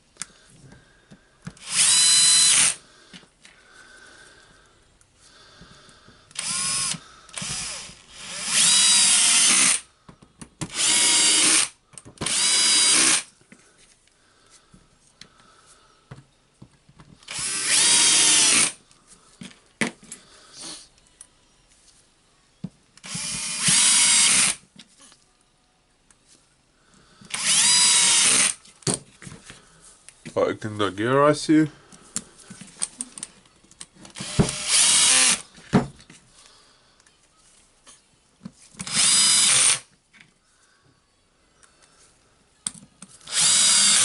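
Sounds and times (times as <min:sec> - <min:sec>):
electric screwdriver whining: 0:01.6 - 0:02.8, 0:06.3 - 0:09.8, 0:10.7 - 0:13.3, 0:17.3 - 0:18.8, 0:23.0 - 0:24.6, 0:27.3 - 0:28.6, 0:34.2 - 0:35.4, 0:38.8 - 0:39.9, 0:43.3 - 0:44.0.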